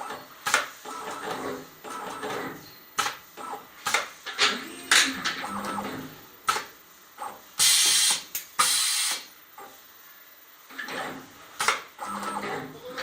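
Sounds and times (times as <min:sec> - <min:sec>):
machine air hiss bursts: 0:07.6 - 0:09.3.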